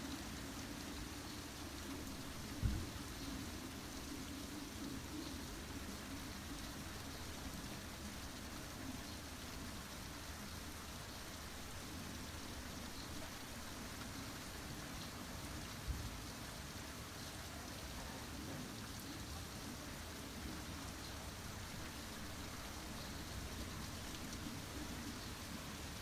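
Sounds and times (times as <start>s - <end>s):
steady rain falling: 0.0s - 26.0s
low thump: 2.6s - 2.9s.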